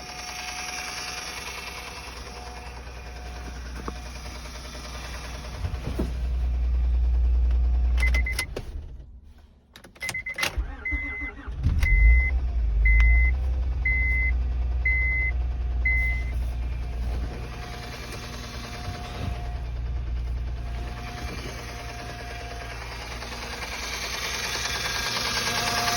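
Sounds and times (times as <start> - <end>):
engine cranking and starting: 0.0 - 9.2, 9.8 - 25.9
car engine idling: 0.0 - 9.7, 10.6 - 25.9
dashboard chimes beeping: 14.9 - 15.3.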